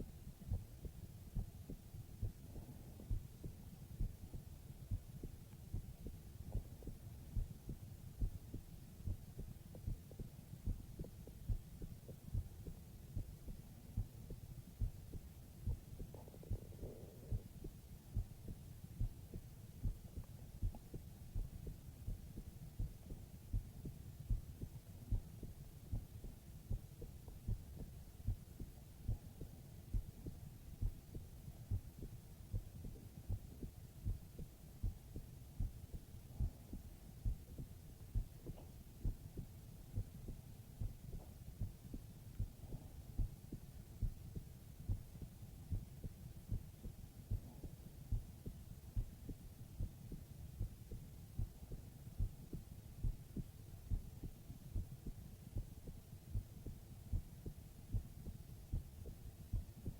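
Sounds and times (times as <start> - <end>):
human heartbeat thumps: 0.5 - 59.9.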